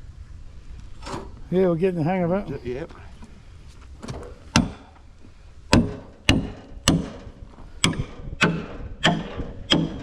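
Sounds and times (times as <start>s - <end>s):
hammer blows on wood: 5.7s - 10.0s.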